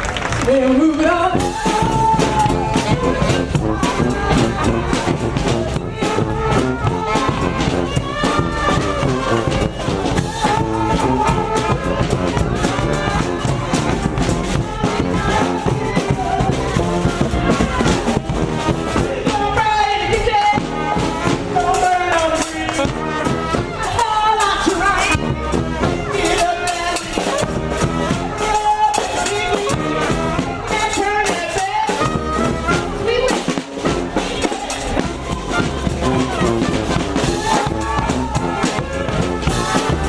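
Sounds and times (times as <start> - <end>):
brass band with drums playing: 0.8 - 40.0
person singing: 18.9 - 40.0.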